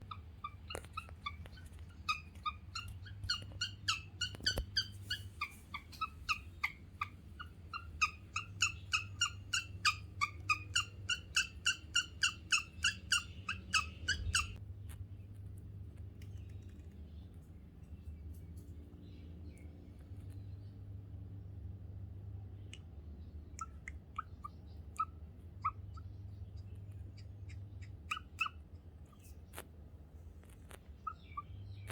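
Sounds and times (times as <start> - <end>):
guinea pig chirping: 0.0 - 14.6, 23.5 - 29.6, 30.7 - 31.9.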